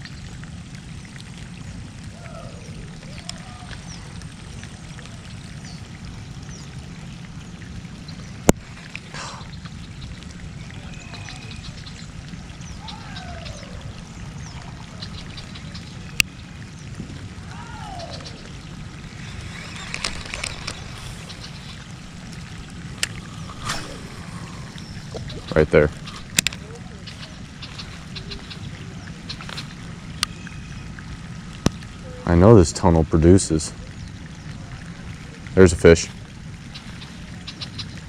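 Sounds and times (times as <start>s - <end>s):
steady low rumble: 0.0s - 35.6s
short falling calls: 17.4s - 28.8s
sharp clicks: 19.2s - 25.4s.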